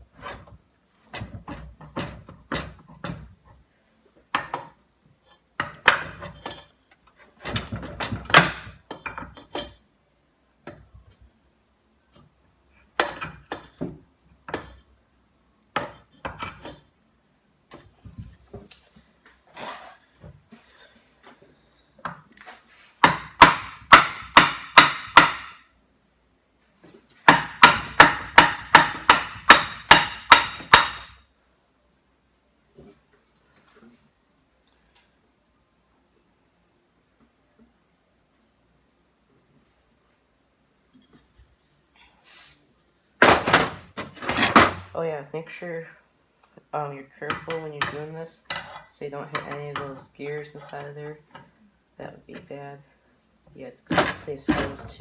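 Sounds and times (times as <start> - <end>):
tools and metal parts clinking: 4.3 - 6.9, 7.5 - 9.8.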